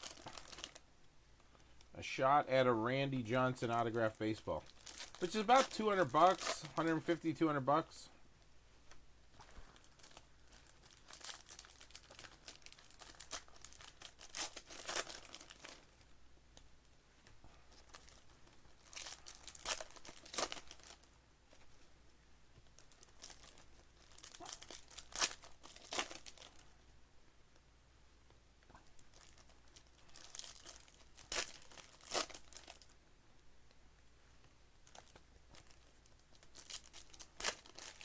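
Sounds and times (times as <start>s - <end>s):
plastic wrapping crinkling and tearing: 0.0s - 0.8s, 3.3s - 7.9s, 9.5s - 16.1s, 17.7s - 21.6s, 22.7s - 26.7s, 28.8s - 33.0s, 34.8s - 38.0s.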